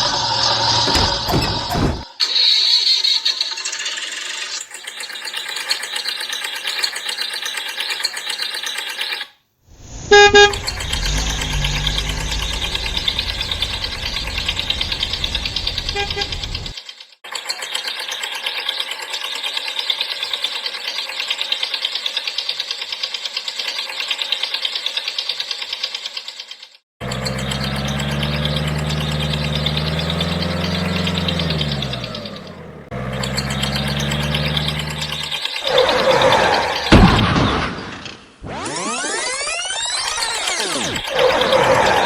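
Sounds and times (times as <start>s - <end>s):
toy whirring with flutter: 2.3s - 9.4s, 16.7s - 26.8s
toy horn toot: 10.1s - 11.6s, 15.9s - 16.5s
low engine-like rumble: 10.5s - 16.7s.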